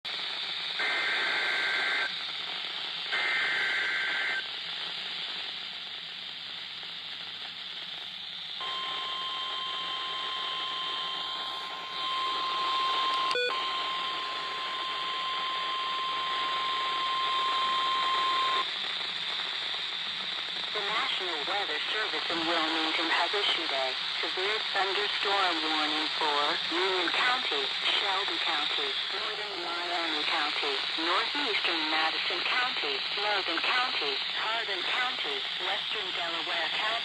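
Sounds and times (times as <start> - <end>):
radio static: 0.2 - 4.9, 8.6 - 37.0
steady warning alarm tone: 8.6 - 18.7.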